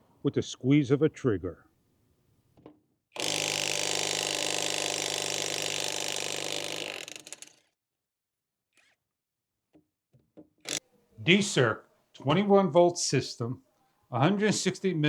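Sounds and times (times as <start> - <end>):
cordless impact wrench running: 3.2 - 7.6.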